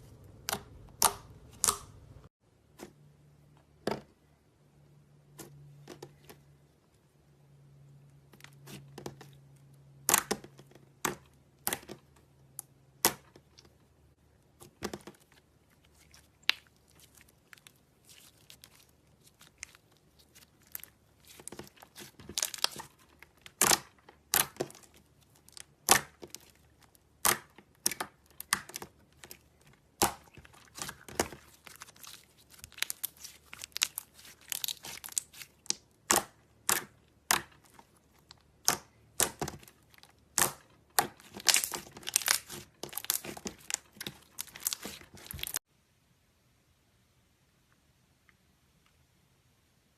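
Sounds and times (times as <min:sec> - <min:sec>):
slime popping and crackling: 0:14.7 - 0:45.6.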